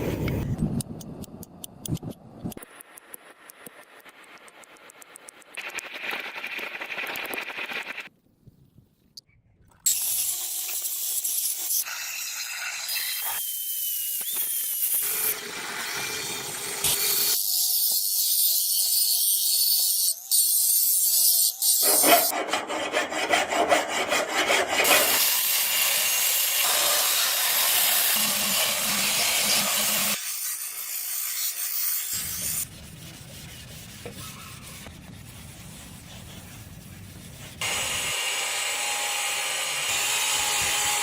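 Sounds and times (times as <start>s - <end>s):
abrasive tool grinding metal blade: 9.9s - 32.7s.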